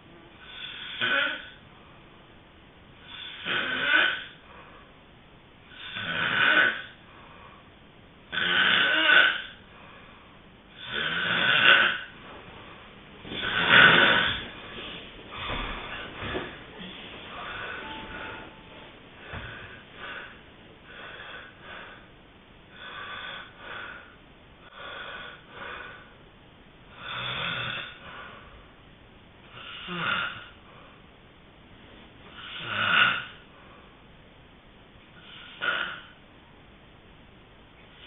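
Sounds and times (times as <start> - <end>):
person snoring: 0.4 - 1.6, 3.0 - 4.4, 5.7 - 7.0, 8.3 - 9.6, 10.8 - 12.1, 13.4 - 14.4, 29.5 - 30.6, 32.3 - 33.4.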